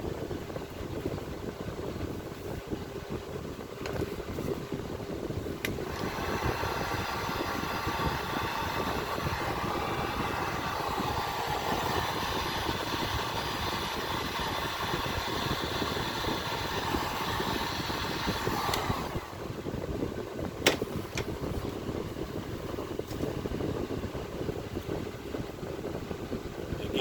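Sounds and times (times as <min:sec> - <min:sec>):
fan winding down: 0:00.0 - 0:27.0
heat gun blowing: 0:05.4 - 0:19.8.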